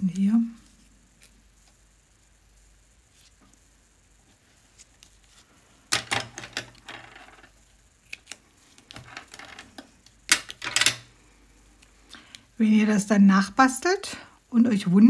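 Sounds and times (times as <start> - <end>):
paper rustling: 4.2 - 5.6.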